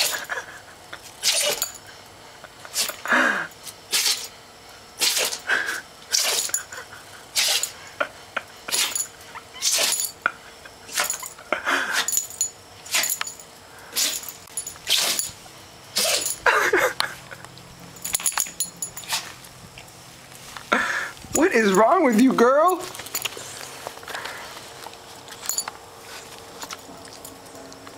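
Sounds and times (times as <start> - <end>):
dog sneezing: 0.0 - 0.3, 1.2 - 1.7, 2.7 - 3.1, 3.9 - 4.3, 5.0 - 5.5, 6.1 - 6.6, 7.3 - 7.8, 8.7 - 10.2, 10.9 - 12.2, 12.9 - 13.2, 13.9 - 15.3, 15.9 - 16.4, 19.0 - 19.4.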